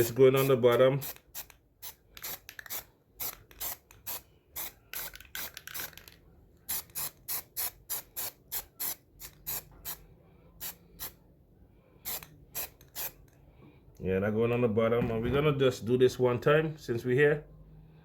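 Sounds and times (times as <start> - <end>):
aerosol can spraying: 0.0 - 10.0, 12.1 - 13.3.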